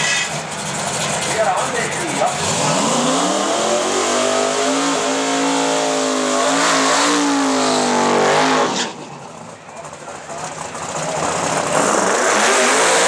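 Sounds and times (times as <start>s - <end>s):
drag car engine at full throttle: 0.0s - 13.0s.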